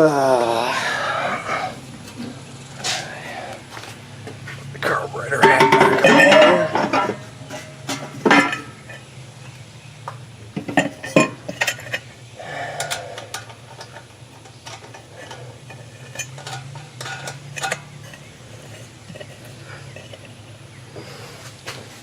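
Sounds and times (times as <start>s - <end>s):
light metal clinks and knocks: 4.3s - 20.8s.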